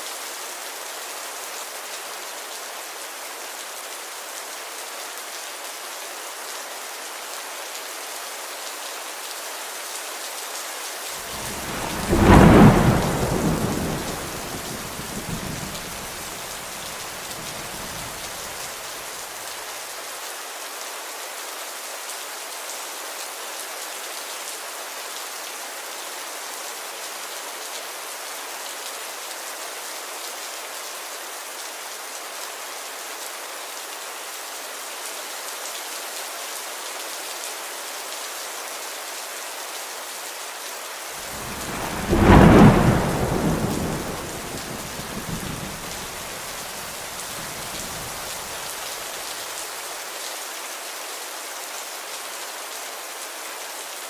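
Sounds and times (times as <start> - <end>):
steady rain falling: 0.0 - 54.0
loud roll of thunder: 11.3 - 18.2, 41.2 - 48.5
thunder rumbling: 11.3 - 18.4, 41.2 - 48.5.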